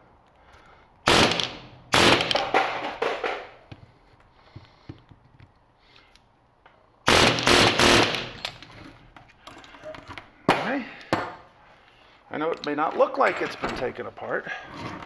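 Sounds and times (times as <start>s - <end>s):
air hammer chiseling steel: 7.1s - 8.4s.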